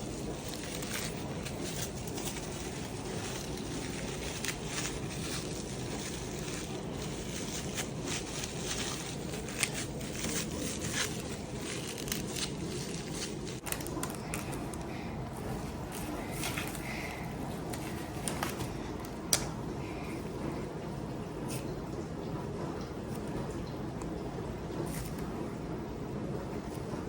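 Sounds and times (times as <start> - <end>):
crafting materials crackling: 0.0 - 19.5
steady low hum: 0.0 - 27.0.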